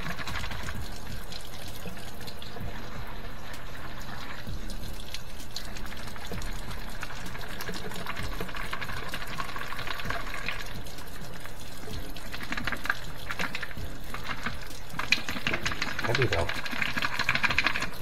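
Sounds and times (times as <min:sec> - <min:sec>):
steady low hum: 0:00.0 - 0:16.8
water sloshing and splashing: 0:00.0 - 0:18.0
small clicks and rattles: 0:11.8 - 0:18.0.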